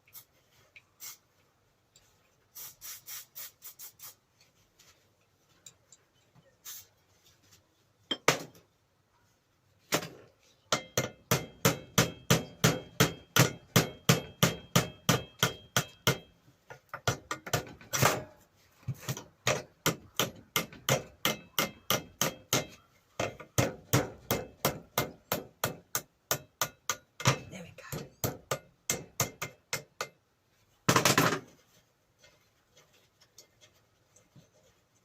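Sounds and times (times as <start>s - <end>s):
small hammer tapping on metal: 10.7s - 17.8s, 19.4s - 30.2s.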